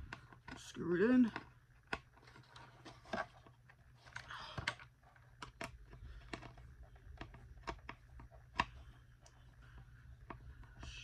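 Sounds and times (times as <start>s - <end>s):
plastic parts being handled: 1.2s - 9.4s.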